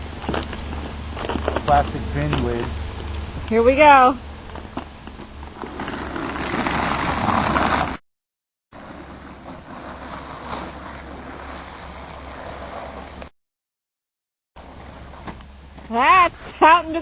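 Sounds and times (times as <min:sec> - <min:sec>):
plastic lid sliding over snow: 0:04.4 - 0:08.0, 0:08.8 - 0:13.3.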